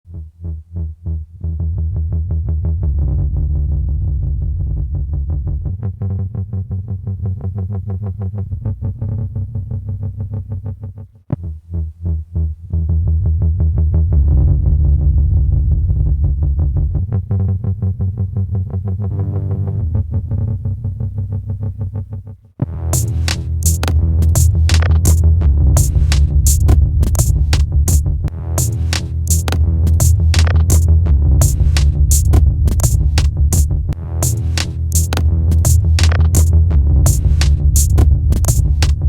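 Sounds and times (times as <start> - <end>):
electronic music with synthesizer: 22.6 - 39.0
fast pulsing beat: 23.0 - 39.0.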